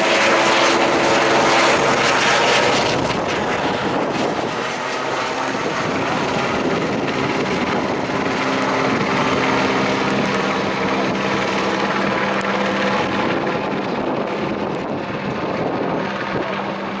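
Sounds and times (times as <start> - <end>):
helicopter rotor and turbine: 0.0 - 17.0.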